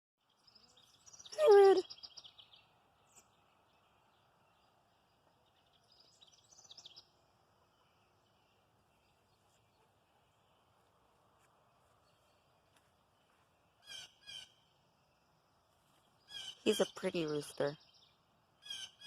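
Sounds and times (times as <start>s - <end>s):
faint high bird chirps: 0.2s - 10.6s, 15.9s - 19.0s
faint outdoor background noise: 0.2s - 19.0s.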